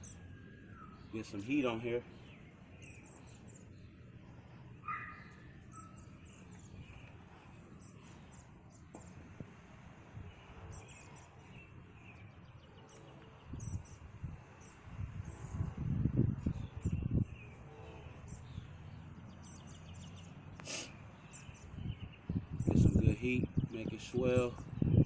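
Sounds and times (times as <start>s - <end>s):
faint bird chirps: 0.0s - 9.3s.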